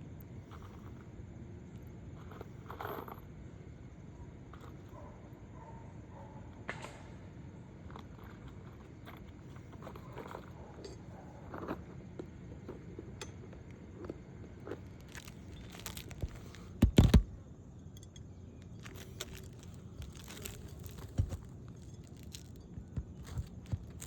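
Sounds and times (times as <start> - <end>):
small clicks and scrapes: 0.2 - 3.4, 4.5 - 5.2, 7.8 - 17.4, 18.0 - 24.0
shingle crinkling: 8.0 - 24.0.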